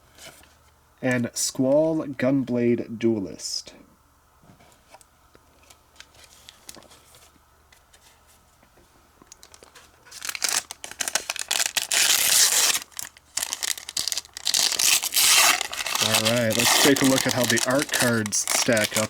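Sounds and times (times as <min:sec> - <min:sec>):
packaging crinkling and tearing: 0:09.3 - 0:19.0.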